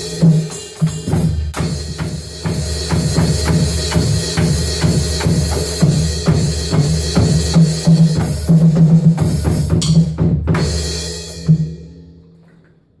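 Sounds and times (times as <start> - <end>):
drum kit played fast: 0.0 - 12.0.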